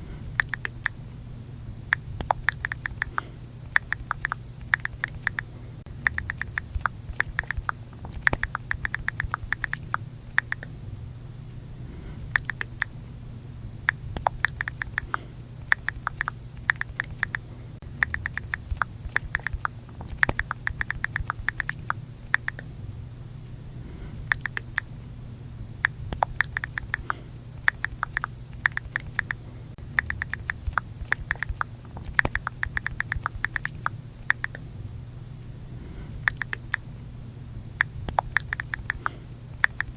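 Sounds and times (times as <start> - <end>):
low hum: 0.0 - 39.9
phone keyboard clicks: 2.2 - 3.2, 3.8 - 5.4, 6.0 - 10.7, 12.4 - 12.9, 14.2 - 17.4, 18.0 - 22.6, 26.1 - 29.4, 30.0 - 34.6, 36.3 - 36.8, 38.1 - 39.9.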